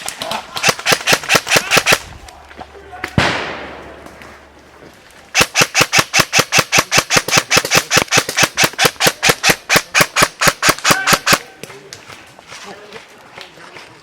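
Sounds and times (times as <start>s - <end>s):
airsoft rifle rapid shots: 0.2s - 2.1s, 5.3s - 11.5s.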